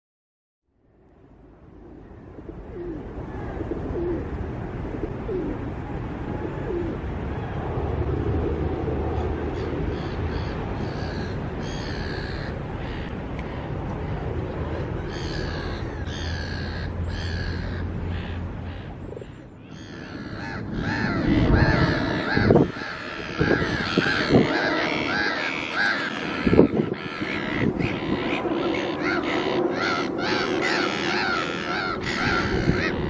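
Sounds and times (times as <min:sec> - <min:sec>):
low traffic hum: 0:00.7 - 0:33.0
wind buffeting microphone: 0:02.0 - 0:33.0
birds calling: 0:09.5 - 0:14.2, 0:14.8 - 0:33.0.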